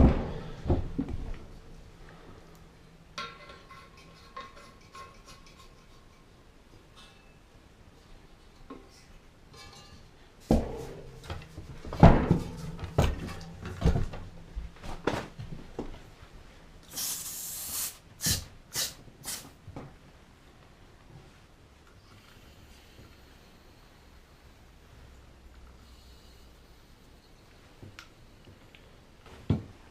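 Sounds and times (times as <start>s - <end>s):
tools and parts clattering: 3.1s - 5.8s, 8.6s - 16.0s
short hisses: 16.9s - 19.6s.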